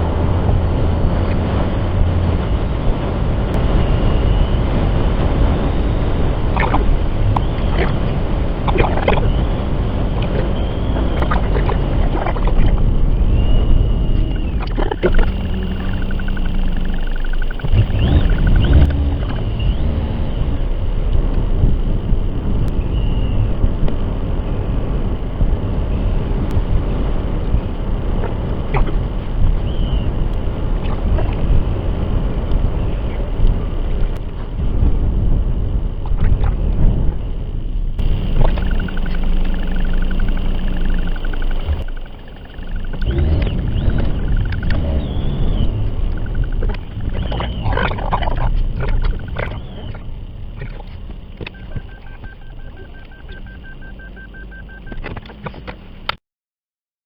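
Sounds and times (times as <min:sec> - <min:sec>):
strong wind buffeting microphone: 0:00.0 - 0:52.8
low rumbling noise: 0:00.0 - 0:55.0
rapid electronic beeping: 0:03.6 - 0:23.4, 0:38.0 - 0:55.0
clicks: 0:14.4 - 0:20.1, 0:38.0 - 0:50.0.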